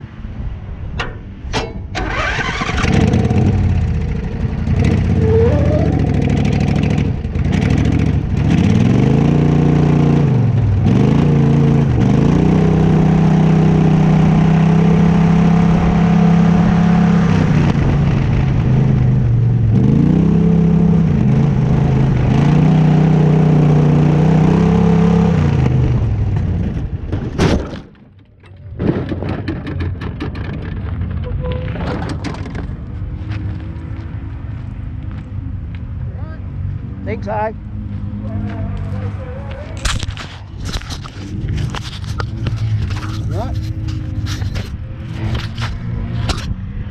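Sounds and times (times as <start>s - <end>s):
lawnmower engine revving: 1.9s - 19.0s.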